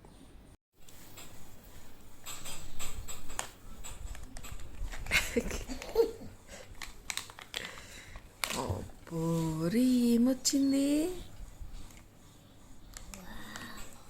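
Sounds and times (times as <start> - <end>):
small objects clicking and rustling: 2.2 - 6.0, 6.6 - 9.2.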